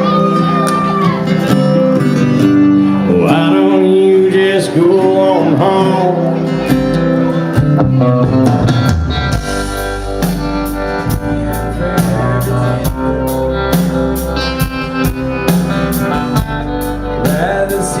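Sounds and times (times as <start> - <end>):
country band guitars: 0.0 - 18.0
drum kit beat: 7.5 - 18.0.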